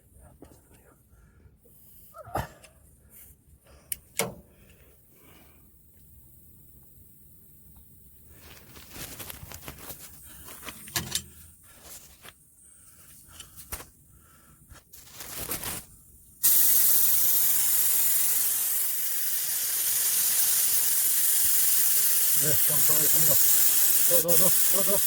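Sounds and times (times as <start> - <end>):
compressed air hissing: 16.4 - 25.0.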